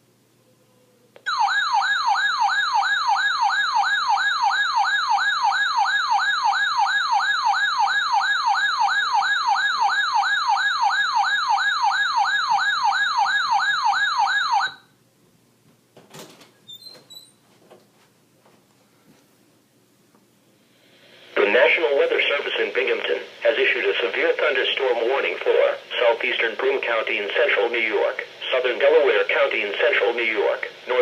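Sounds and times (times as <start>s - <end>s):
warbling alarm tone: 1.3s - 14.9s.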